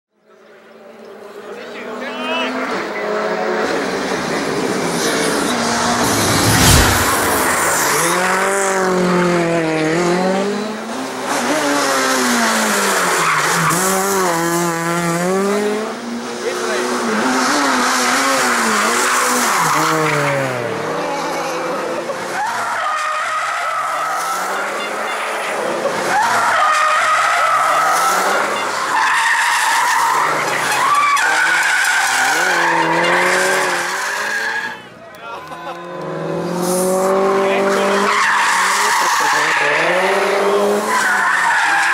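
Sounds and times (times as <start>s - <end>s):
car engine revving hard: 2.5s - 22.4s, 31.5s - 34.7s, 35.8s - 41.2s
tyres squealing: 22.2s - 35.2s, 37.8s - 41.9s.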